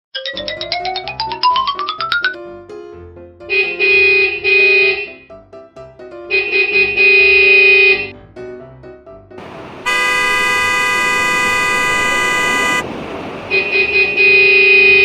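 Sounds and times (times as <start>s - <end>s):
long horn blast: 9.4s - 15.0s
rushing noise: 9.4s - 15.0s
cartoon horn toot: 9.8s - 12.8s.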